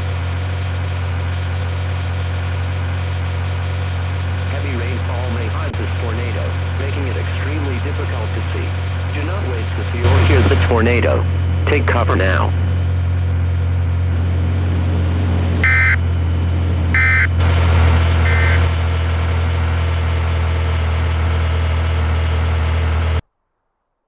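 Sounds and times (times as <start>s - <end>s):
vehicle engine drone: 0.0s - 23.2s
short electronic beeps: 15.6s - 16.0s, 17.0s - 17.4s, 18.2s - 18.7s.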